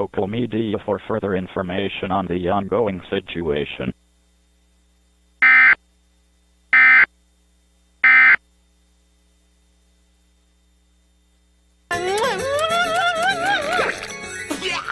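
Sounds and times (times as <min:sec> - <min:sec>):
digital data tone bursts: 0:05.4 - 0:05.8, 0:06.8 - 0:07.1, 0:08.0 - 0:08.4.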